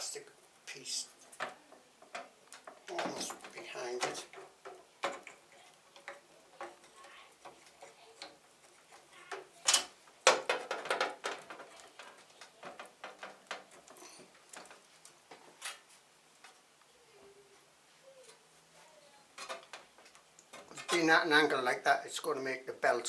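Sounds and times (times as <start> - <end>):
clicks and knocks of parts handled: 1.2 - 16.7, 19.4 - 21.1.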